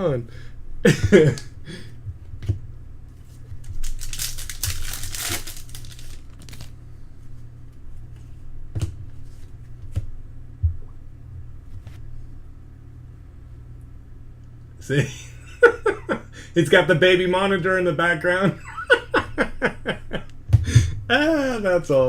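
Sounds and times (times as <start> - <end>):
wrapper crinkling and tearing: 3.6 - 6.8.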